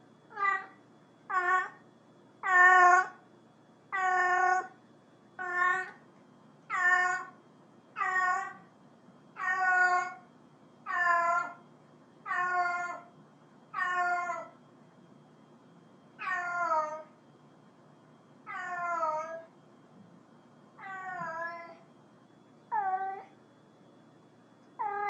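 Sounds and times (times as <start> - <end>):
cat meowing: 0.3 - 1.8, 2.4 - 3.2, 4.0 - 4.7, 5.4 - 6.0, 6.7 - 7.3, 8.0 - 8.6, 9.4 - 10.2, 12.3 - 13.0, 13.8 - 14.5, 16.2 - 17.1, 18.5 - 19.5, 20.8 - 21.8, 22.7 - 23.3, 24.8 - 25.0.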